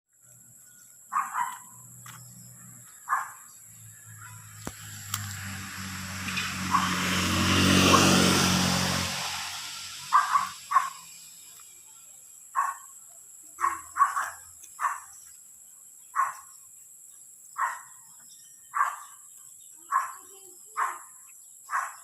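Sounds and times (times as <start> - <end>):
insects droning: 0.2 - 22.0
dog barking: 1.1 - 1.8, 3.0 - 3.5, 6.7 - 7.0, 10.1 - 11.1, 12.6 - 12.9, 13.6 - 15.2, 16.2 - 16.5, 17.6 - 18.0, 18.7 - 19.2, 19.9 - 22.0.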